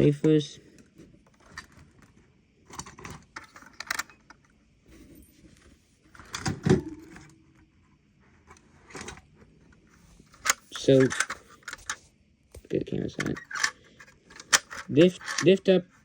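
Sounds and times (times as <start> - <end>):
small items clicking and rattling: 10.4 - 12.0, 13.0 - 15.6.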